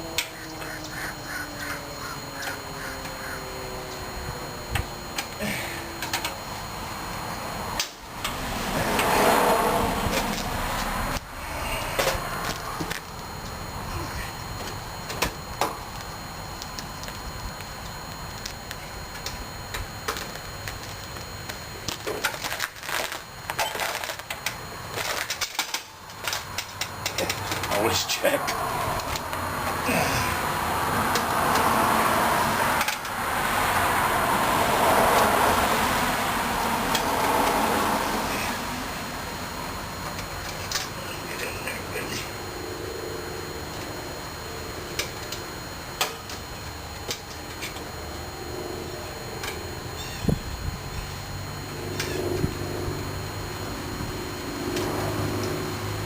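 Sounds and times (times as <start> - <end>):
steady low hum: 0.0 - 56.0
crow cawing: 0.3 - 3.4
parts clicking and clattering: 21.8 - 27.8.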